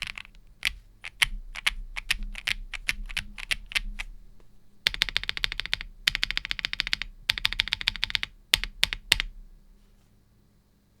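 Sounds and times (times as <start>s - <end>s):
mechanical keyboard keystrokes: 0.0s - 4.1s, 4.9s - 9.3s.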